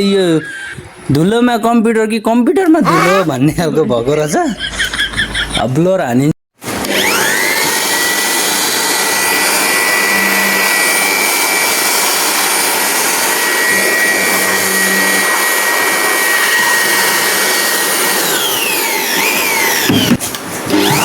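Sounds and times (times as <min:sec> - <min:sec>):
electric air blower whining: 0:06.7 - 0:21.0.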